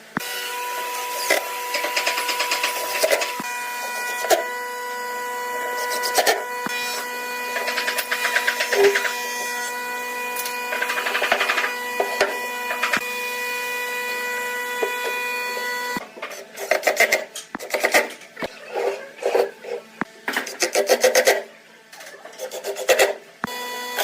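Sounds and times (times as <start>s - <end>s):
power tool cutting wood: 0.0s - 16.0s, 22.4s - 24.0s.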